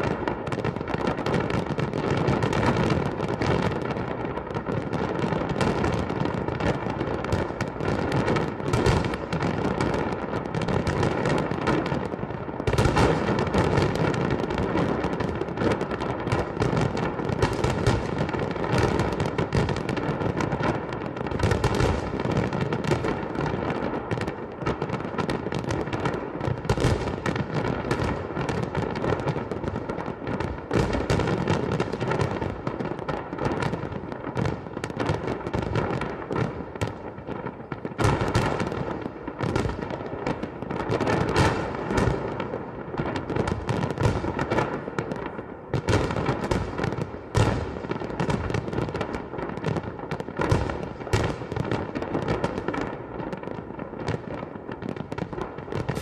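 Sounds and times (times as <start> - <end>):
fireworks bangs and crackling: 0.0 - 56.0.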